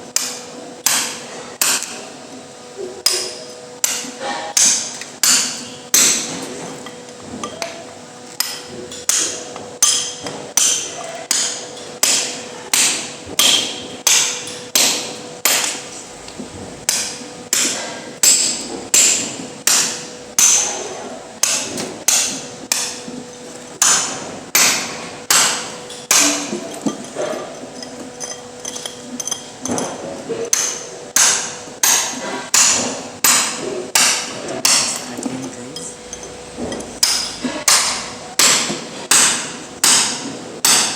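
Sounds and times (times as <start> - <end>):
hammer blows ringing: 23.8 - 40.9.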